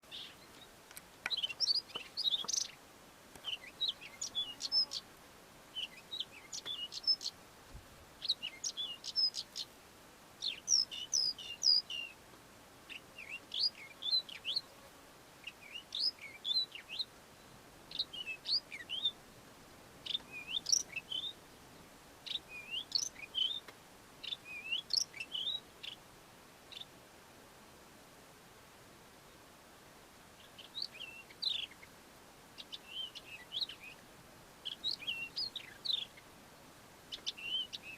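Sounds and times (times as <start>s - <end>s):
lark singing: 1.3s - 2.8s, 3.4s - 5.1s, 5.8s - 7.4s, 8.2s - 9.7s, 10.4s - 12.2s, 12.9s - 14.7s, 15.4s - 17.1s, 17.9s - 19.2s, 20.0s - 21.4s, 22.2s - 26.0s, 30.4s - 31.9s, 32.6s - 34.0s, 34.6s - 36.2s, 37.1s - 37.9s.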